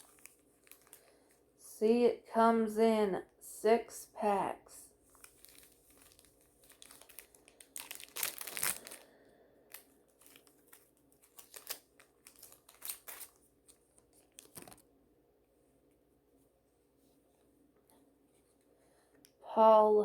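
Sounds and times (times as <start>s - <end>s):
wrapper ripping open: 0.0s - 1.0s, 5.1s - 9.1s, 9.7s - 14.8s
wrapper crinkling: 0.0s - 1.4s, 5.1s - 14.9s.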